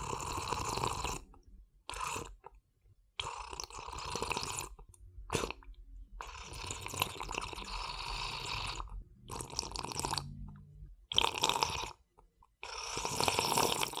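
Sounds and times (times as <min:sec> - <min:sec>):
person sipping a drink: 0:03.2 - 0:10.3.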